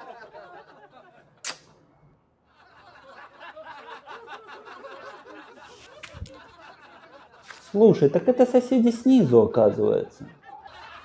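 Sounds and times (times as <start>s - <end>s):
people laughing: 0.0s - 1.4s, 2.5s - 11.0s
sharp click: 1.4s - 1.8s.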